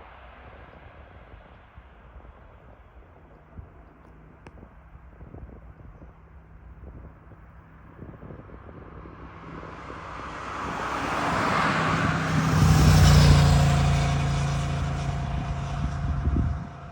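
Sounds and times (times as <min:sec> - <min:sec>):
jet engines passing: 0:08.4 - 0:16.9.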